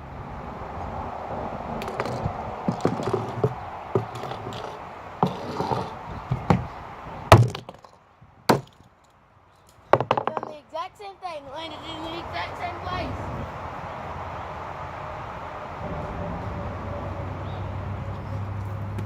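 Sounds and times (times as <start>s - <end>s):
hammer knocking on plastic cube: 1.8s - 6.7s, 7.3s - 7.8s, 8.5s - 8.8s, 9.9s - 10.5s.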